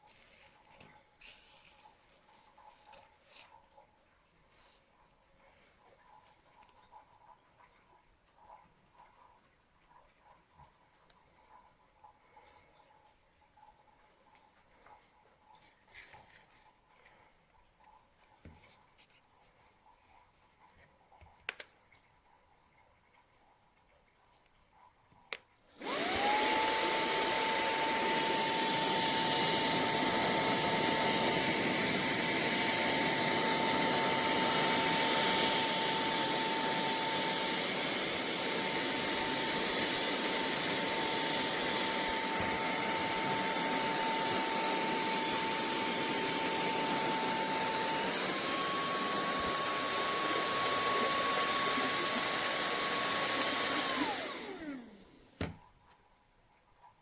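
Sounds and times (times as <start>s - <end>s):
handheld vacuum motor whine: 25.7s - 55.5s.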